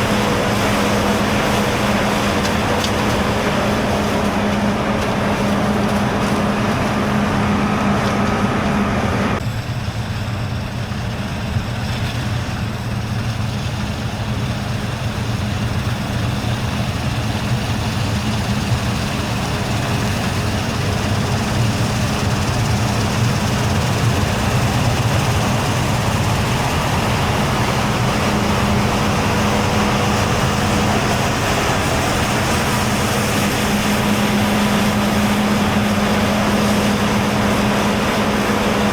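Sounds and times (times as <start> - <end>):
diesel machinery humming: 0.0 - 38.9
steady droning tone: 20.2 - 38.9.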